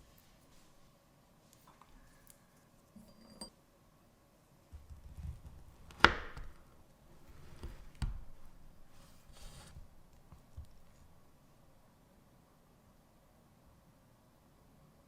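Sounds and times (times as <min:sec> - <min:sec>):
soft handling sounds: 0:00.0 - 0:03.5, 0:07.0 - 0:11.4.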